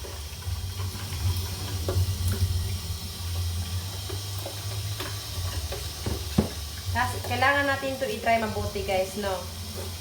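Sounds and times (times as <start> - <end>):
tap water running into a sink: 0.0 - 10.0
light knocks: 6.0 - 6.6.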